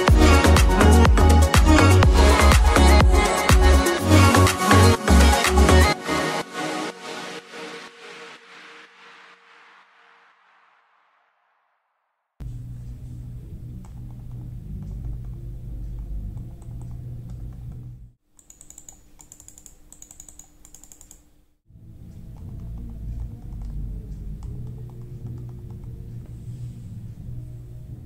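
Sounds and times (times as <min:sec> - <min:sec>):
steady low hum: 0:12.4 - 0:18.2, 0:21.7 - 0:28.0
sharp high-pitched clicks: 0:18.4 - 0:21.3.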